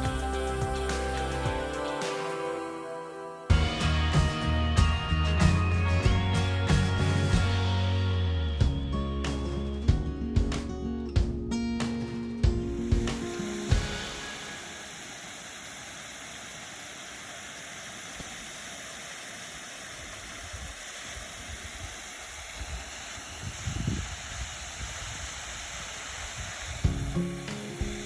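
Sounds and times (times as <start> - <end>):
low bumps: 3.5 - 11.6
waterfall rushing: 13.4 - 23.4.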